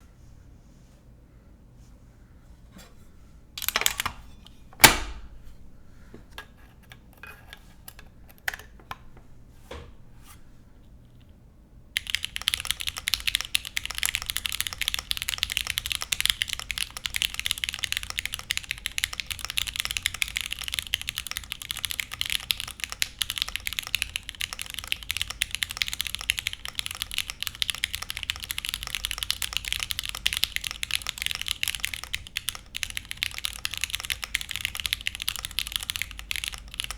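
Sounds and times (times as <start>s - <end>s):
mechanical keyboard typing: 3.6s - 4.2s, 12.0s - 36.9s.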